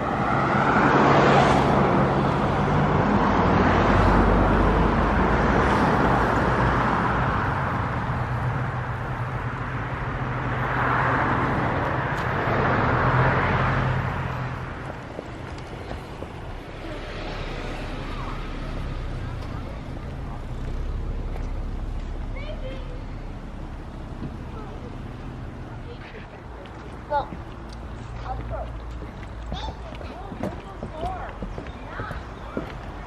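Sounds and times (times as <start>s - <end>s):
road vehicle tyres and engine: 0.0s - 33.0s.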